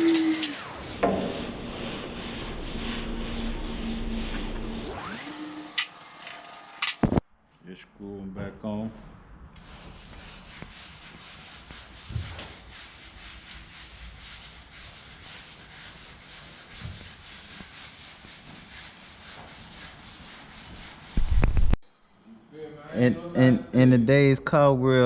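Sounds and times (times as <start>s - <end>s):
rhythmic rubbing or scraping: 0.0s - 7.2s.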